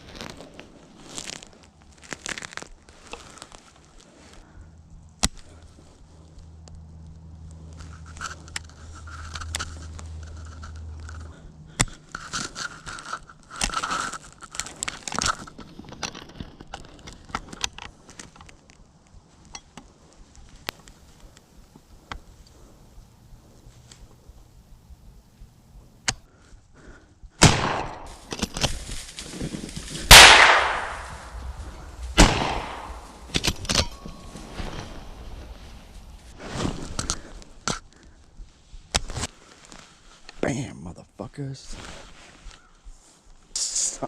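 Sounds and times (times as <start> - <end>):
rustling and crinkling handling noise: 0.0 - 4.6, 5.4 - 25.8, 28.0 - 30.1, 31.0 - 40.6, 41.4 - 43.4
low steady hum: 2.7 - 38.6
sharp clicks: 30.1 - 34.0.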